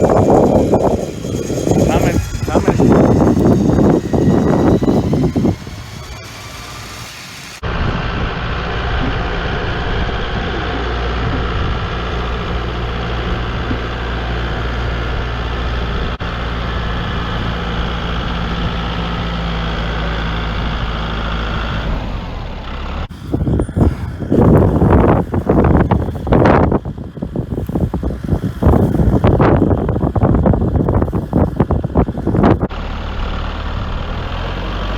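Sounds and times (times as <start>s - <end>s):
high whine: 0.0s - 34.4s
truck engine idling: 0.0s - 34.9s.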